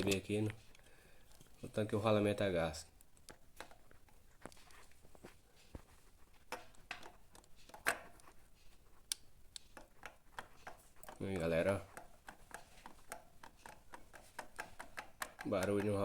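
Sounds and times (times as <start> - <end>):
camshaft clicking and knocking: 6.5 - 8.3, 9.0 - 16.0.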